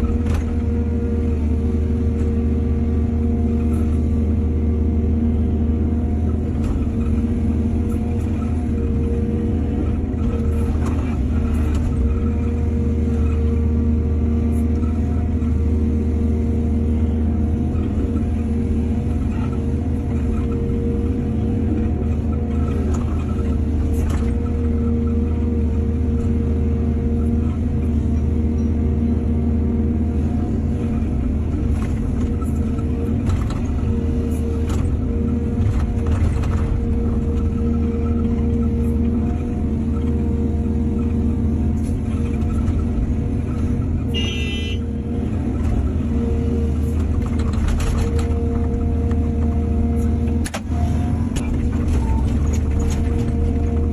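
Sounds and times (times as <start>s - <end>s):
excavator diesel engine running: 0.0s - 53.9s.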